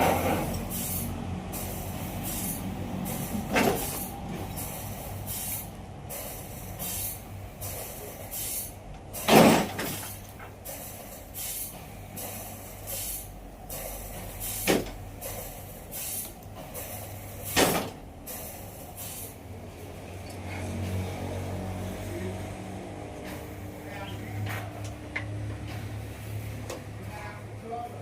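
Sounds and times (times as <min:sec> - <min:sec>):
rhythmic hissing: 0:10.5 - 0:17.6, 0:18.2 - 0:19.6.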